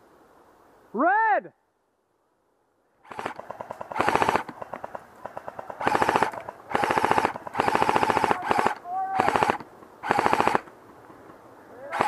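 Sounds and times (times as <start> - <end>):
airsoft guns firing full-auto: 3.0 - 10.7.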